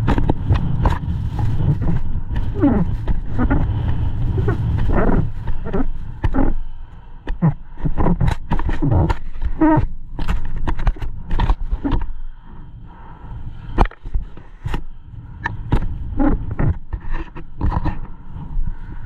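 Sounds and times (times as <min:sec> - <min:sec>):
snowmobile engine running: 0:00.0 - 0:06.6
wind buffeting microphone: 0:00.0 - 0:19.0.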